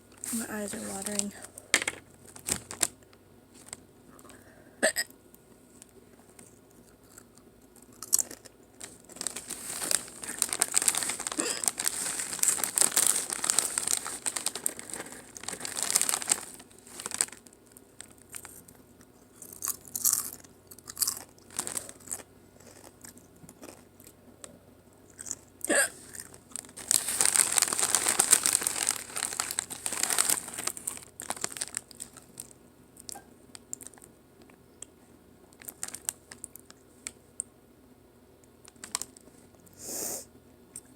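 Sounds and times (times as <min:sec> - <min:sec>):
tortilla chips crunched and chewed: 0:06.8 - 0:24.2, 0:25.1 - 0:25.4, 0:26.1 - 0:34.6, 0:35.5 - 0:37.2, 0:38.6 - 0:39.3.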